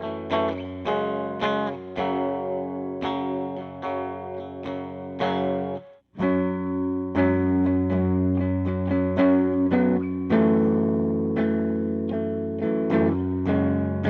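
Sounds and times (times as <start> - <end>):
electric guitar chords: 0.0 - 14.0.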